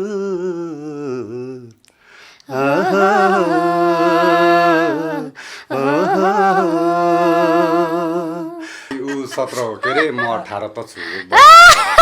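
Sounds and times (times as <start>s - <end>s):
man singing long notes: 0.0s - 1.8s, 2.5s - 8.7s.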